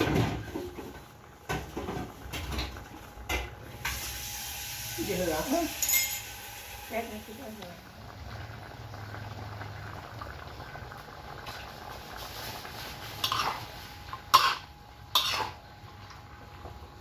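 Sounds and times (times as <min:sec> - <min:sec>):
metal spatula scraping a wok: 0:13.1 - 0:13.8.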